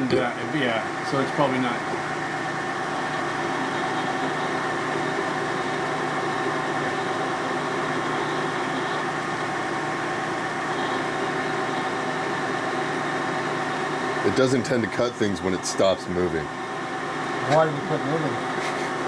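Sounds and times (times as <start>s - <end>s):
machine tool motor humming: 0.0s - 19.0s.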